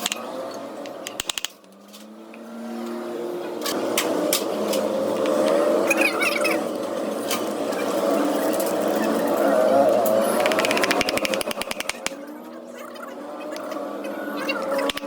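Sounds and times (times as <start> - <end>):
sharp clicks: 0.9 - 1.6, 10.4 - 12.2, 14.8 - 15.0.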